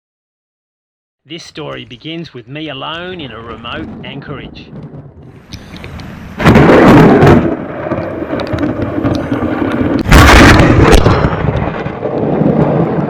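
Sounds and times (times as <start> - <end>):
rolling thunder rumble: 2.6 - 13.0
thunder crack: 2.6 - 13.0.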